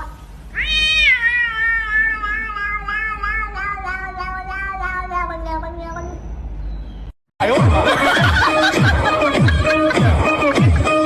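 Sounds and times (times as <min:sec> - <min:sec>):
cat yowling: 0:00.5 - 0:06.2.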